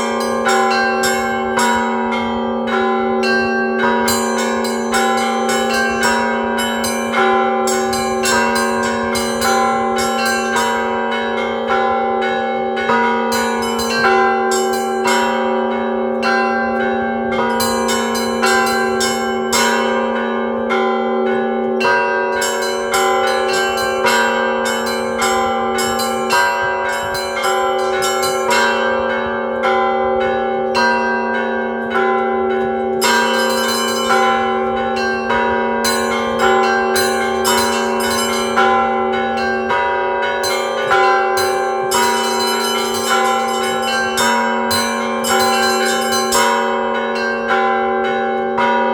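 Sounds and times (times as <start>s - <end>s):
church bells pealing: 0.0s - 48.9s
small bells struck quickly: 33.0s - 47.7s.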